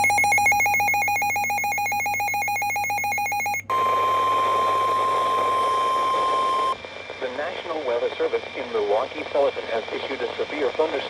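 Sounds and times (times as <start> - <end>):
steady alarm tone: 0.0 - 6.8.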